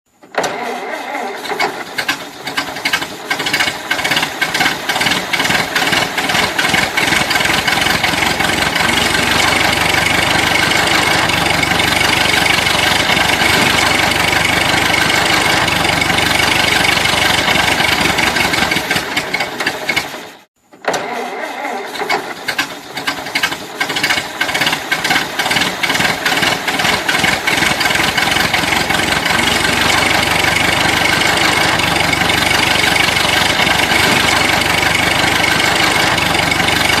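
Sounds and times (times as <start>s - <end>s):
car starter cranking: 0.2s - 20.3s, 20.9s - 37.0s
old car engine running: 0.6s - 20.5s, 21.9s - 37.0s.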